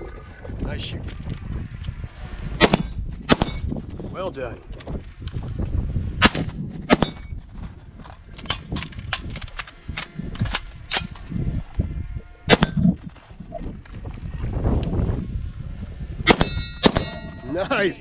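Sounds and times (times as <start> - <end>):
rifle shots: 2.6 - 3.7, 6.2 - 7.3, 12.5 - 12.9, 16.3 - 17.4
bullets clanging on steel targets: 2.6 - 3.8, 6.3 - 7.4, 12.5 - 13.0, 16.3 - 17.6.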